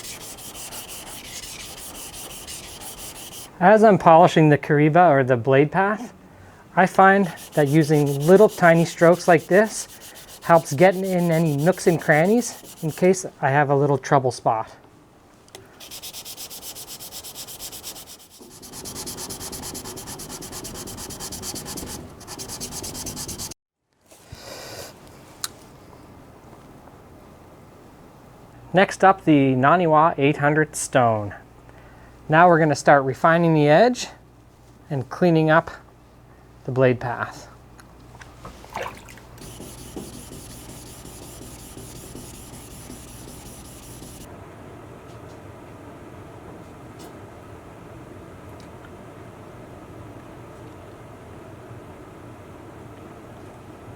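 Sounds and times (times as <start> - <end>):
knife rasping on whetstone: 0.0 - 3.5, 7.2 - 13.1, 15.8 - 23.5, 39.4 - 44.3.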